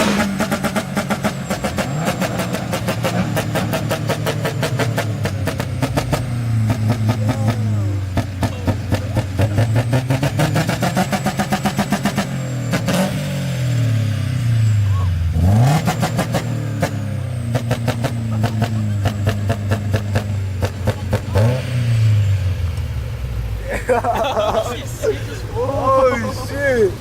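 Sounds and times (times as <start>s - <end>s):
car engine revving: 0.0s - 27.0s
exhaust popping and crackling: 0.0s - 27.0s.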